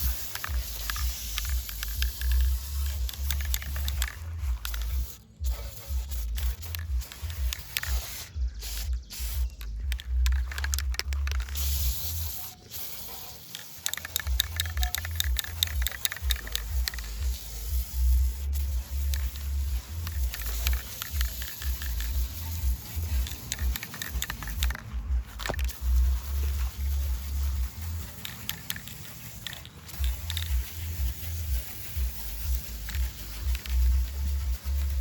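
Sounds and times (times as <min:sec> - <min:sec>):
quick clicks and scrapes: 0:12.8 - 0:17.2
music with pulsing bass: 0:14.3 - 0:28.2, 0:30.0 - 0:35.0.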